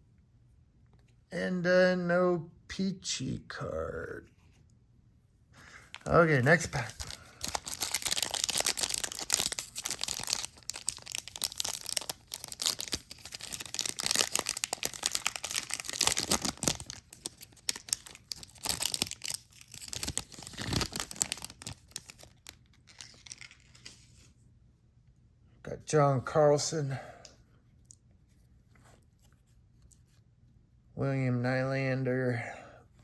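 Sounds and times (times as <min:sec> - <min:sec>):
card pack wrapper tearing: 0:05.7 - 0:24.0.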